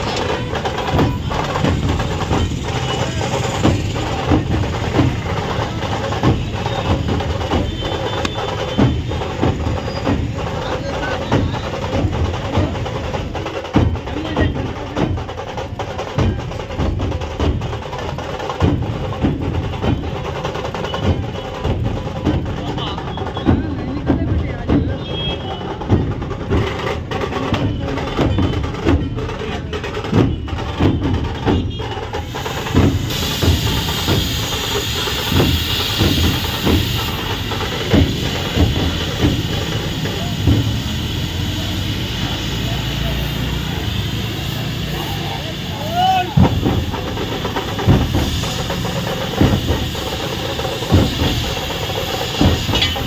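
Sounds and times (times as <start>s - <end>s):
music with percussive strikes: 0.0s - 25.1s
low drum beats: 0.0s - 53.0s
steady hiss: 32.2s - 53.0s.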